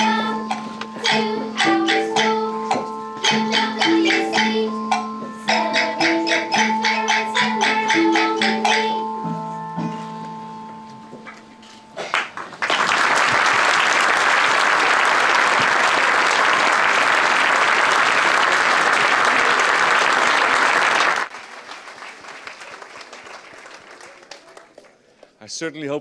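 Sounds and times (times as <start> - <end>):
music notes ringing out: 0.0 - 12.5
audience applauding: 12.0 - 25.1.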